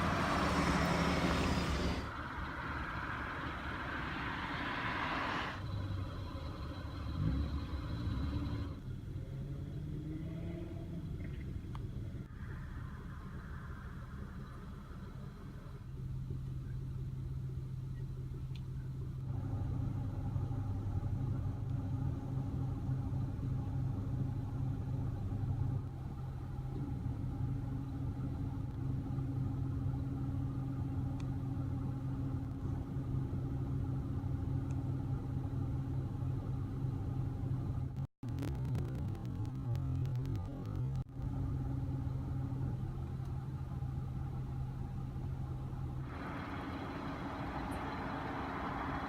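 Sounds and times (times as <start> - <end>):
car engine idling: 0.0 - 9.2, 10.9 - 49.0.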